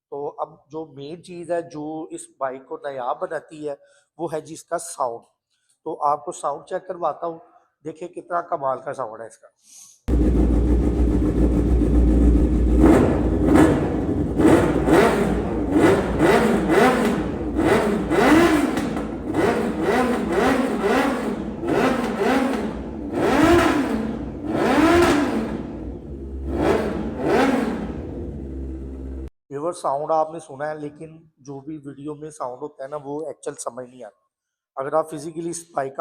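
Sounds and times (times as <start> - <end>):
motorcycle engine idling: 10.1 - 29.3
motorcycle engine revving: 10.1 - 29.3.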